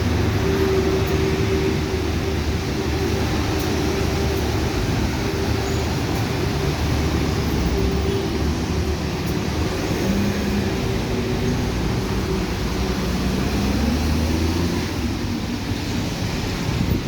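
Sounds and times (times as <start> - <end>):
rushing noise: 0.0 - 17.0
vehicle engine hum: 0.0 - 17.0.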